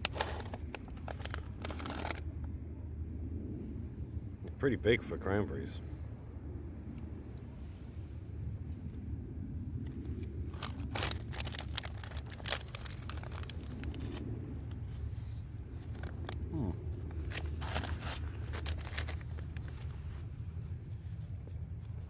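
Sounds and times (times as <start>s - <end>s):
plastic food pouch crinkling: 0.0s - 2.3s, 10.6s - 14.2s, 17.1s - 19.9s
wind rumble on microphone: 0.0s - 22.0s.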